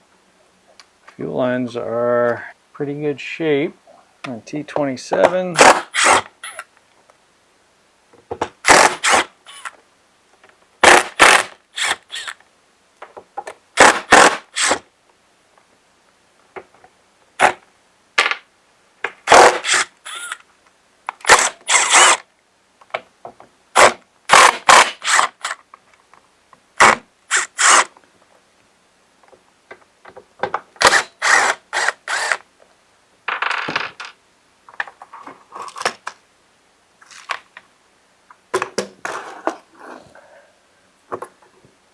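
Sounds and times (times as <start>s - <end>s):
tools and plastic parts clattering: 33.3s - 36.2s.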